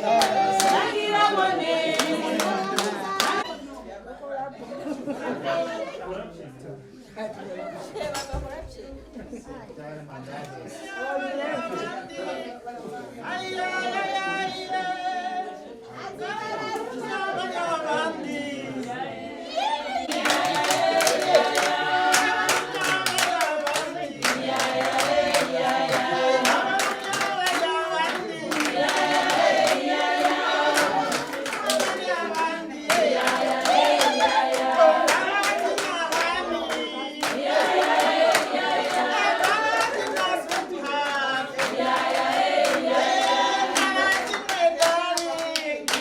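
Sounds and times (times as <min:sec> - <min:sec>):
hand clapping: 0:00.0 - 0:01.0, 0:01.9 - 0:03.4, 0:20.1 - 0:46.0
group of voices singing: 0:00.0 - 0:03.6, 0:10.6 - 0:46.0.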